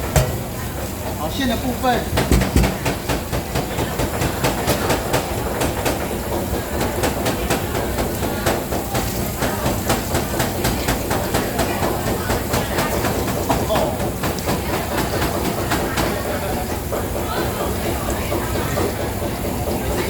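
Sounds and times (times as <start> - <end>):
cleavers chopping on cutting boards: 2.2 - 3.6.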